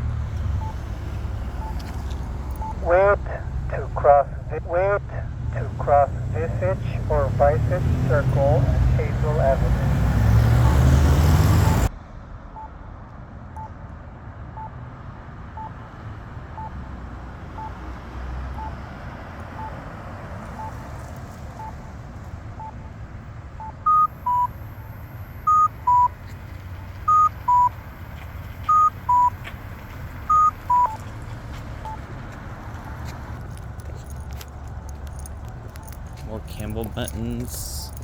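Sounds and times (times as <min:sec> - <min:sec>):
faint locator ticks: 0:00.3 - 0:09.9, 0:23.6 - 0:38.0.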